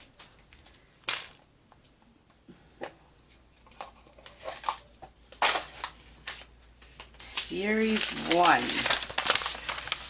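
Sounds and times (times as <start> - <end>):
packaging crinkling: 3.6 - 10.0.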